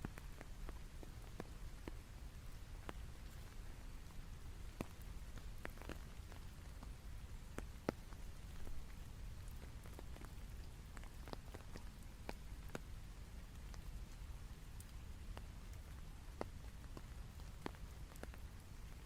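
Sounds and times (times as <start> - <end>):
raindrops ticking on a surface: 0.0 - 19.0.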